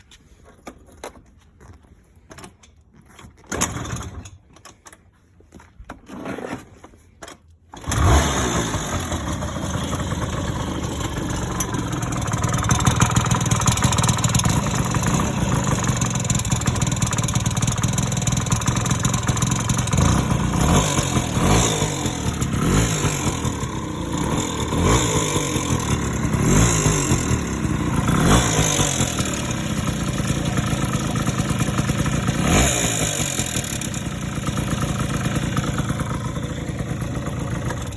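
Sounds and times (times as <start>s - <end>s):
scooter engine revving: 7.8s - 37.9s.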